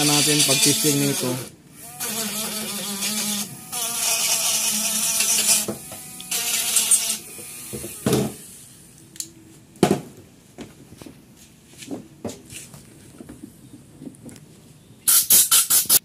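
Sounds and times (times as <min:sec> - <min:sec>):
small power tool running: 0:00.0 - 0:08.7.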